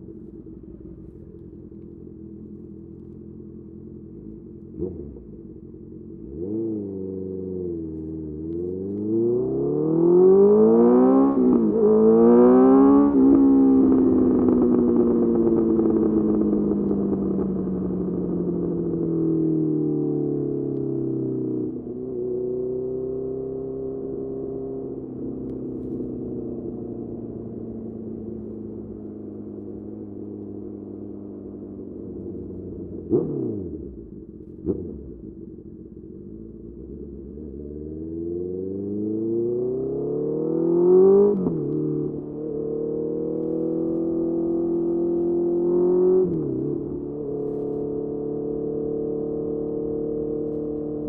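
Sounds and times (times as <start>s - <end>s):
motorcycle engine running: 0.0s - 40.0s, 40.8s - 51.0s.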